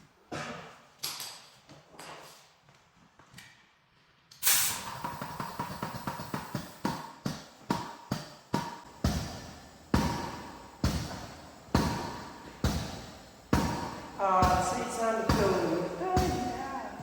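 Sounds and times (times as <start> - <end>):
air pump hiss: 4.4 - 17.0
pump clacking strokes: 4.8 - 17.0.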